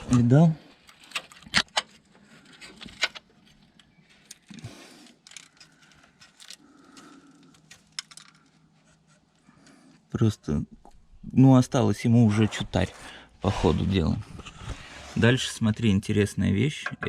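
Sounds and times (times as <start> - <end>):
metal parts clinking and scraping: 0.0 - 9.0.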